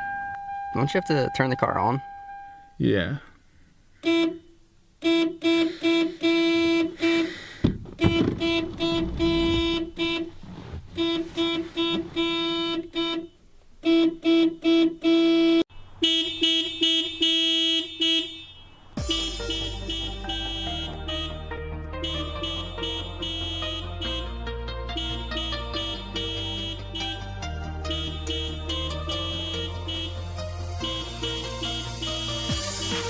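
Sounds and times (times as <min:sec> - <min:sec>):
car horn beeping: 0:04.0 - 0:33.0
thump: 0:07.6 - 0:09.8.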